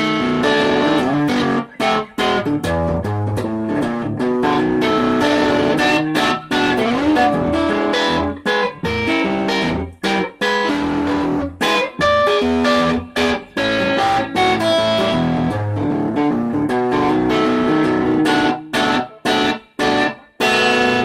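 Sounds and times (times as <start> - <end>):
overdriven electric guitar: 0.0 - 21.0.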